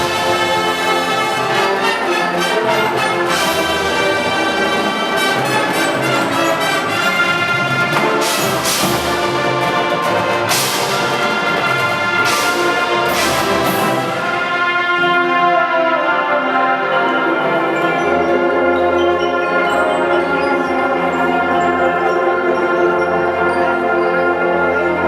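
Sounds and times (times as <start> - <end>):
brass sustained chords: 0.0 - 25.0.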